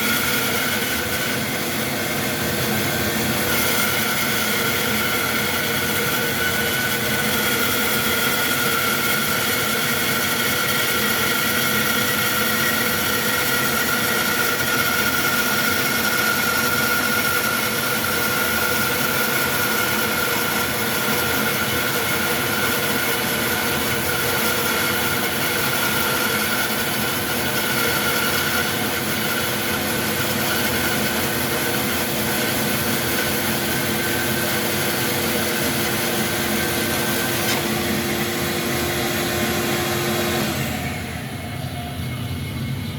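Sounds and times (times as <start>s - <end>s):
bandsaw cutting wood: 0.0s - 41.0s.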